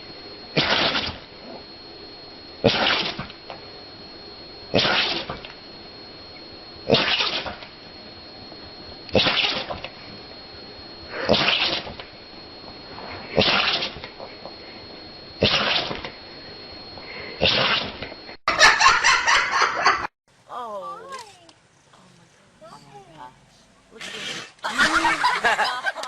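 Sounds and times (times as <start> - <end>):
animal sneezing: 0.6 - 1.2, 11.2 - 11.9, 24.0 - 24.6.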